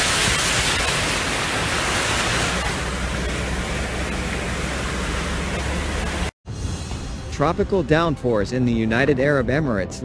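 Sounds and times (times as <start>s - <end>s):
loud rush of water: 0.0s - 6.3s.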